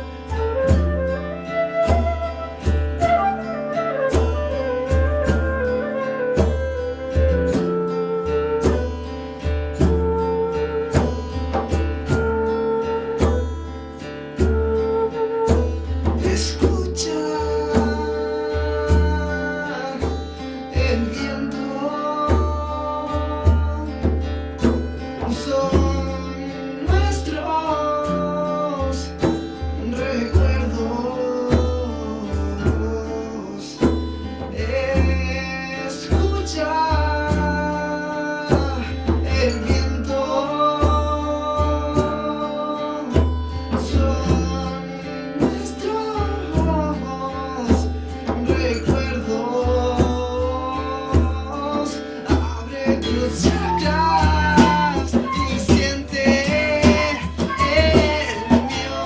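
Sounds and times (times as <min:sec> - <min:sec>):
strummed guitar: 0:00.0 - 0:59.0
person singing: 0:14.4 - 0:59.0.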